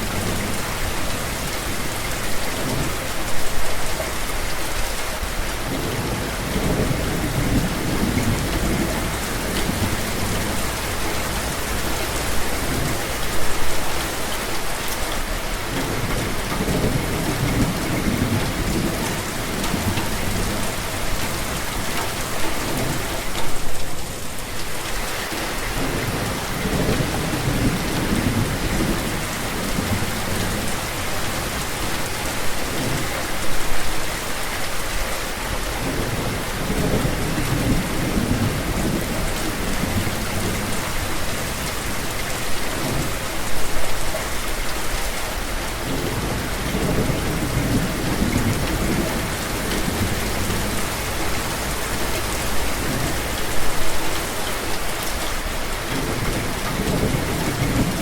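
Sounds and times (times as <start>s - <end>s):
steady rain falling: 0.0s - 58.0s
thunder rumbling: 45.8s - 53.8s.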